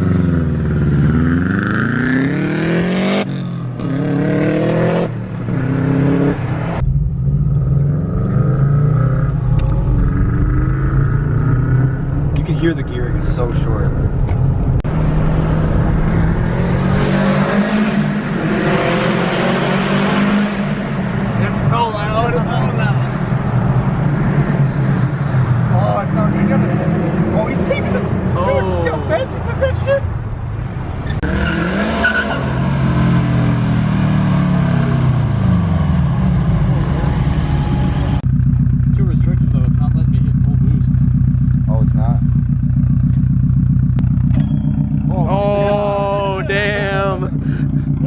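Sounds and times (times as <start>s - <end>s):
car engine revving hard: 0.0s - 6.8s, 14.9s - 23.2s, 31.2s - 38.2s
car engine accelerating: 0.0s - 48.0s.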